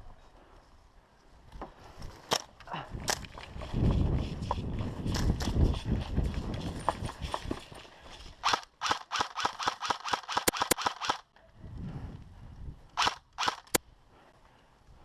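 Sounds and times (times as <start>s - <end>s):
airsoft gun shots: 8.4s - 11.2s, 13.0s - 13.8s.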